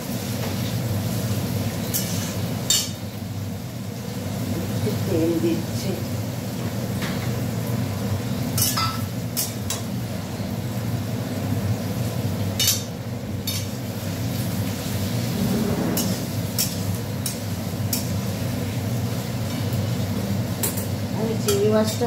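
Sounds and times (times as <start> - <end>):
food frying in a pan: 0.0 - 22.0
spatula clinking on pan: 8.6 - 9.8.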